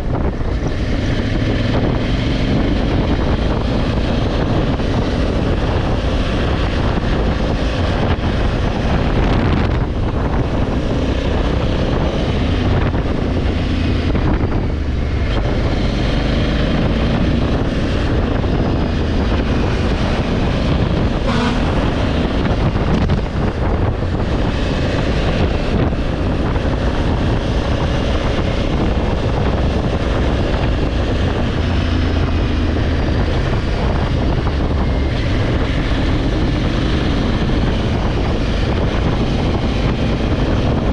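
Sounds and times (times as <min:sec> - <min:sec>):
motorcycle engine running: 0:00.0 - 0:40.9
wind buffeting microphone: 0:00.0 - 0:40.9.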